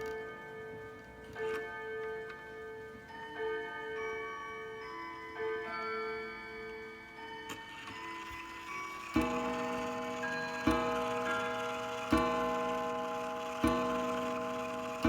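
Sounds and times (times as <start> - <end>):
clock striking a coil gong: 8.0 - 15.0.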